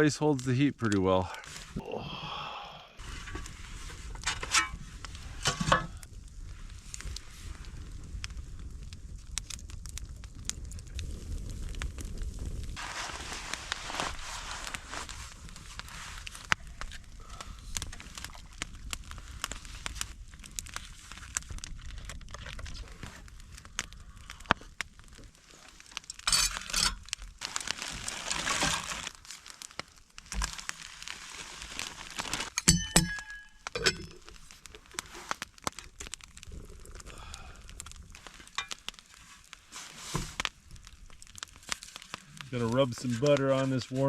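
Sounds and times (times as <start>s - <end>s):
rustling and crinkling: 3.0s - 44.0s
ringing clink: 32.6s - 34.1s.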